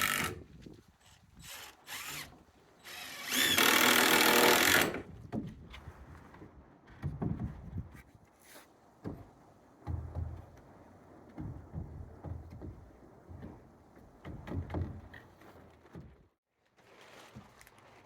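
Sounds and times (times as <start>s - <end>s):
dull thumps and knocks on timber: 4.8s - 8.1s, 9.0s - 16.2s.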